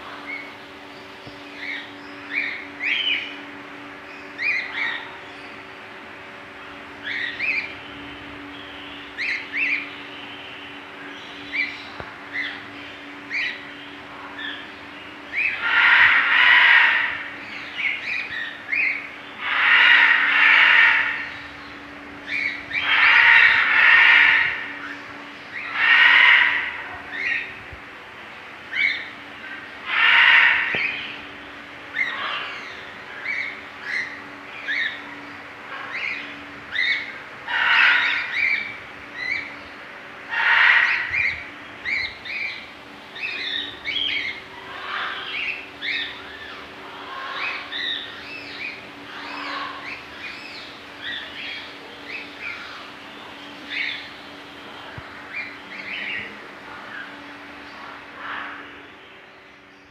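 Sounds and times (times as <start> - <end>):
cockatiel harsh screeching: 15.6 - 17.2, 19.4 - 21.3, 22.7 - 24.7, 25.7 - 26.8, 29.9 - 30.8, 37.5 - 38.6, 40.3 - 41.3.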